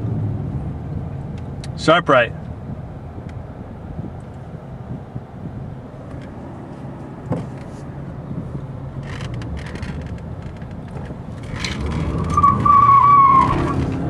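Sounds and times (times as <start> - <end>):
road and engine rumble: 0.0 - 14.0
short rattles: 9.0 - 12.6.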